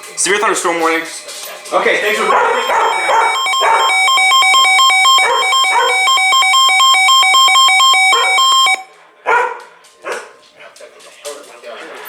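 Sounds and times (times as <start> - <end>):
electronic two-tone alert beeping: 2.2 - 8.9.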